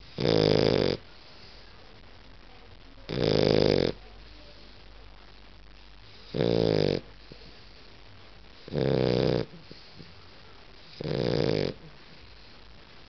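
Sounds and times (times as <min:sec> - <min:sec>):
dog snoring: 0:00.0 - 0:01.0, 0:03.1 - 0:04.0, 0:06.1 - 0:07.8, 0:08.6 - 0:10.2, 0:10.8 - 0:12.5.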